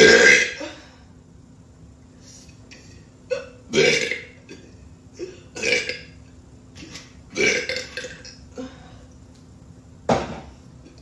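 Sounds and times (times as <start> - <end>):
person burping: 0.0 - 0.8, 3.3 - 6.1, 6.8 - 8.4.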